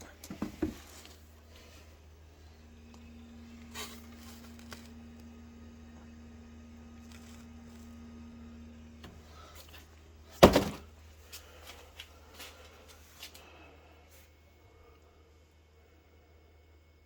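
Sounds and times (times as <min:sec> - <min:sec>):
heat pump humming: 0:00.0 - 0:17.0
loud thunk: 0:10.4 - 0:10.9.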